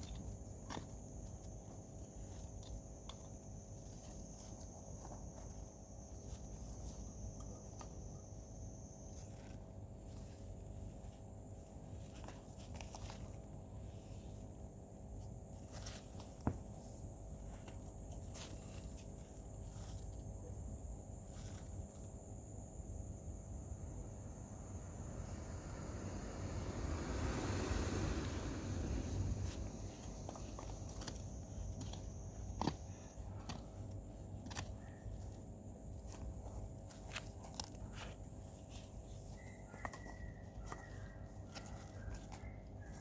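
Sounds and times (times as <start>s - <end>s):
high-pitched insect trill: 0.0s - 43.0s
low rumble: 24.3s - 30.8s.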